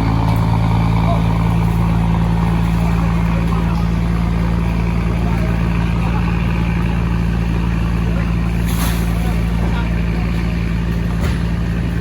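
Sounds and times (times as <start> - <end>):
boat engine humming: 0.0 - 8.6.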